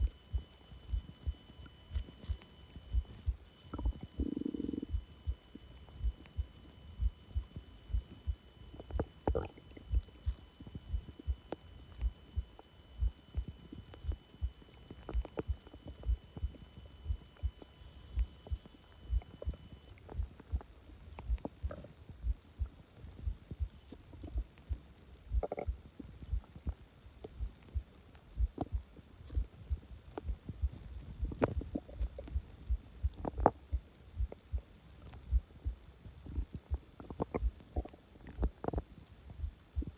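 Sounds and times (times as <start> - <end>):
stomach growling: 2.0 - 5.2, 8.8 - 11.3, 18.5 - 27.8, 28.4 - 39.9.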